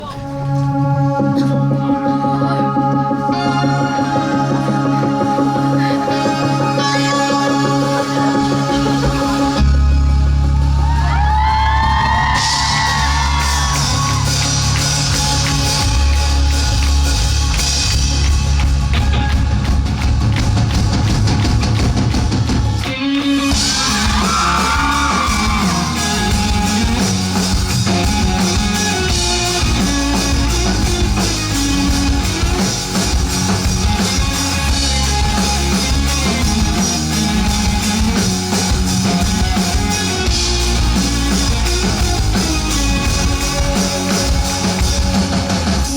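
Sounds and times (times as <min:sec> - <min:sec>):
person singing: 0:00.0 - 0:11.7
rock band playing live: 0:00.0 - 0:45.9
people shouting: 0:10.8 - 0:14.5, 0:23.6 - 0:27.0.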